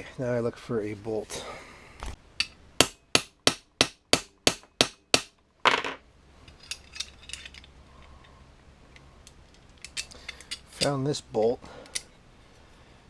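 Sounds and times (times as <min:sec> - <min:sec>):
small clinks of metal parts: 0:06.4 - 0:11.1.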